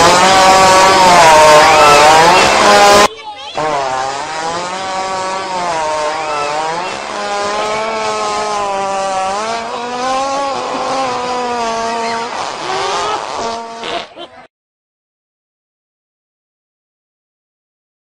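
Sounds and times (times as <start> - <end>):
buzzy fart sound: 0.0 - 14.3.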